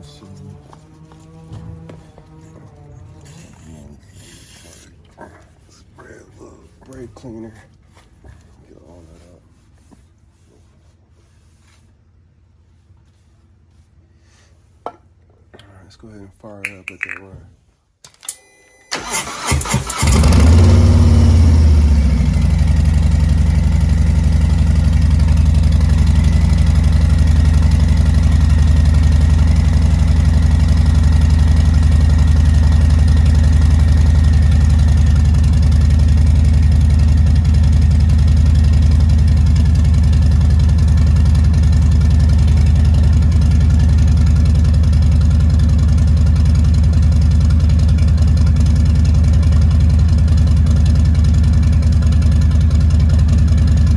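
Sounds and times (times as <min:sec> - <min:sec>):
motorcycle engine starting and idling: 0:00.0 - 0:03.4, 0:18.9 - 0:53.9.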